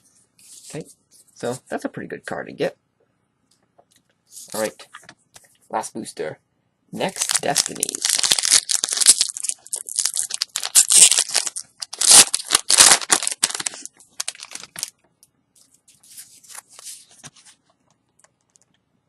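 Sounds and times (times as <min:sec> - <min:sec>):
foil wrapper tearing and crinkling: 0:07.1 - 0:14.9.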